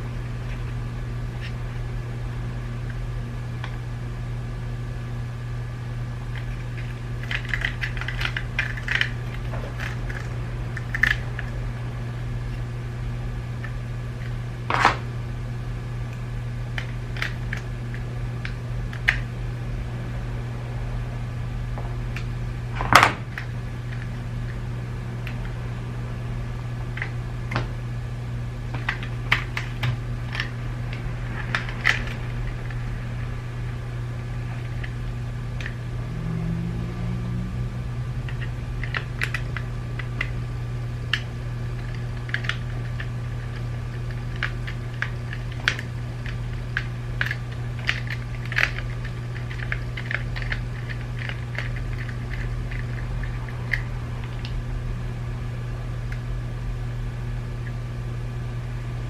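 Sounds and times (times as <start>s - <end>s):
steady low hum: 0.0s - 59.0s
plastic parts clicking and tapping: 6.4s - 11.5s, 16.8s - 19.2s, 28.7s - 32.2s, 38.3s - 40.3s, 41.1s - 54.6s.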